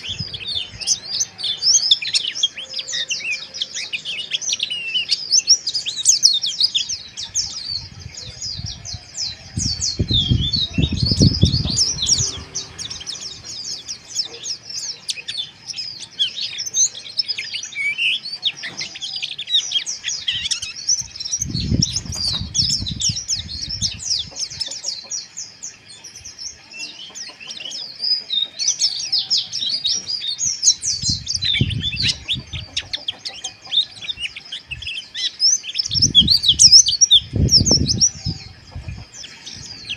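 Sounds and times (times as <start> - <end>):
birds twittering: 0.0 - 39.9
low rumble: 9.6 - 13.7.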